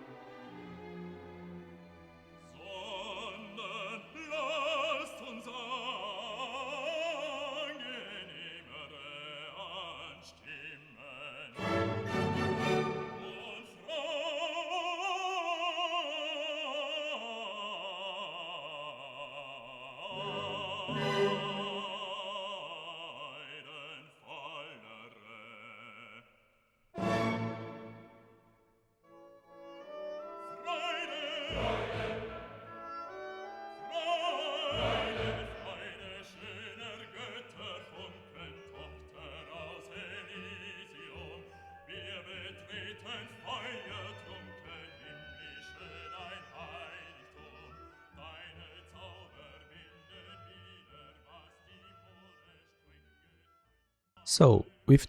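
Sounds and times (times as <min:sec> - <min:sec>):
operatic voice singing: 0:02.4 - 0:26.3, 0:30.2 - 0:52.8, 0:54.2 - 0:55.0
orchestral accompaniment: 0:11.6 - 0:13.8, 0:20.1 - 0:22.4, 0:27.0 - 0:28.4, 0:29.3 - 0:37.4.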